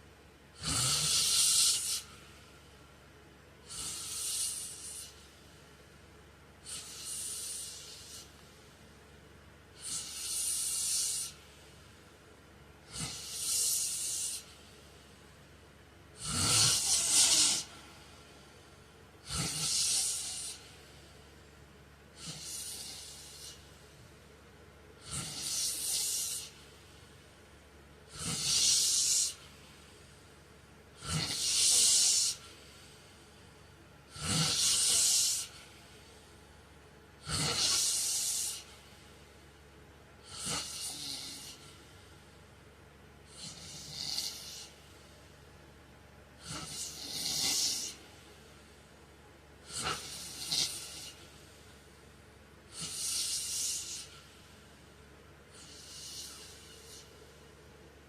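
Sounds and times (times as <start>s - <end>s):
man snoring: 0.6s - 2.1s, 3.6s - 5.2s, 6.7s - 8.3s, 9.8s - 11.4s, 12.8s - 14.5s, 16.2s - 17.8s, 19.2s - 20.7s, 22.2s - 23.6s, 25.0s - 26.6s, 28.1s - 29.4s, 31.0s - 32.4s, 34.1s - 35.6s, 37.2s - 38.7s, 40.2s - 41.7s, 43.3s - 44.8s, 46.4s - 48.0s, 49.6s - 51.2s, 55.6s - 57.1s.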